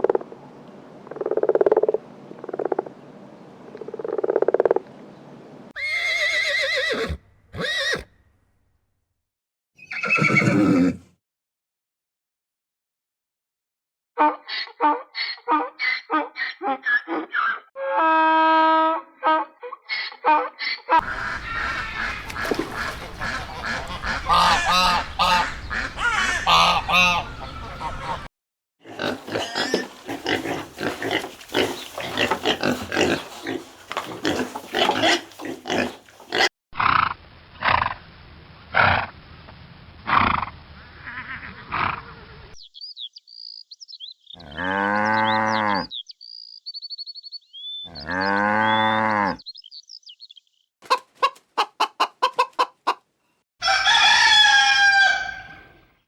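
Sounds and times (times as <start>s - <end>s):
long low animal calls: 21.0s - 28.3s
small birds chirping: 21.0s - 28.3s, 29.6s - 34.4s, 42.6s - 48.4s, 49.4s - 50.7s
farm animals grunting and calling: 21.0s - 38.0s, 40.0s - 42.6s, 44.2s - 46.1s, 47.5s - 49.5s.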